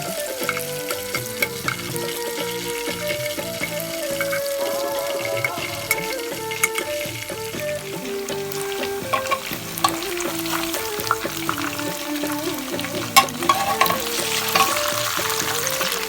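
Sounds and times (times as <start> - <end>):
food sizzling in hot oil: 0.0 - 16.0
utensil clacking against pan: 0.0 - 16.0.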